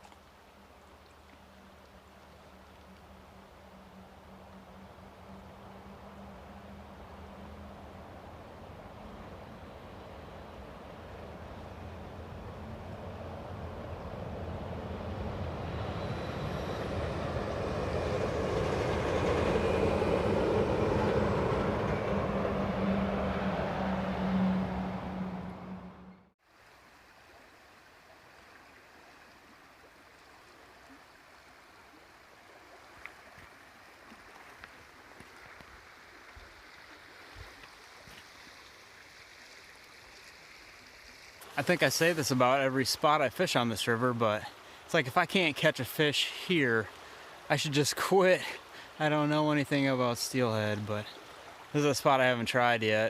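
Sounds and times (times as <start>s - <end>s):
river rushing: 0.0s - 53.0s
passing vehicle hum: 2.8s - 26.3s.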